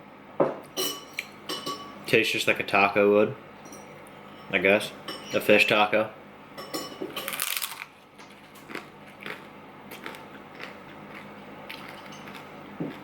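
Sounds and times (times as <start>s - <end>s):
person chewing crunchy food: 7.2s - 13.0s.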